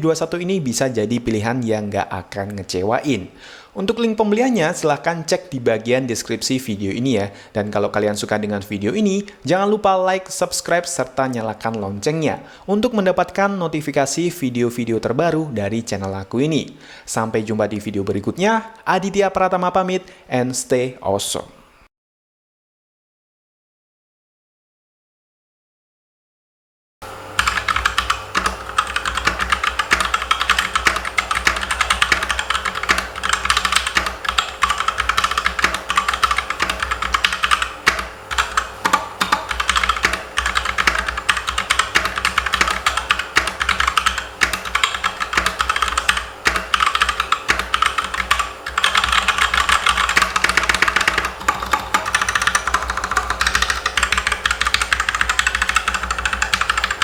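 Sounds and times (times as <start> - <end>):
fast mechanical keyboard typing: 27.4 - 57.0.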